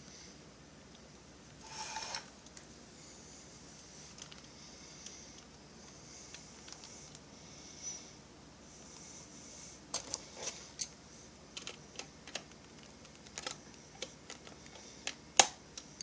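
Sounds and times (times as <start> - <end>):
metal parts scraping: 1.6 - 2.3.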